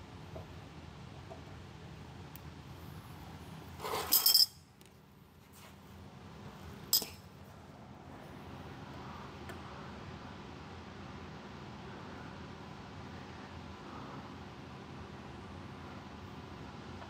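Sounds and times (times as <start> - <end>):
low garage room noise: 0.0 - 17.0
metal tools clinking: 3.9 - 4.6, 6.9 - 7.3.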